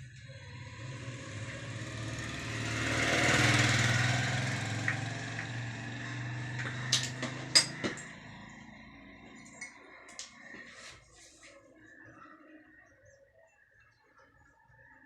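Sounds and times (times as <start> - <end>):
motor engine running: 0.0 - 10.5.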